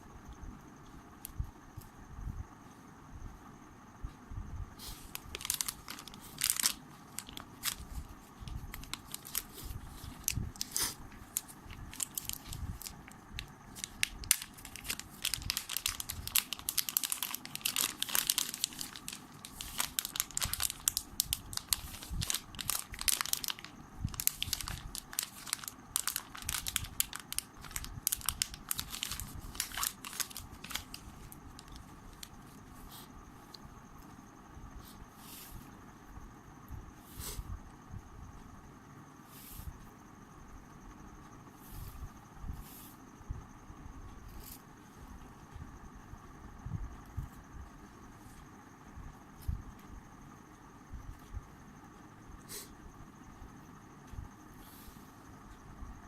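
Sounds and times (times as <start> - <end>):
plastic packaging crinkling: 4.9 - 32.6.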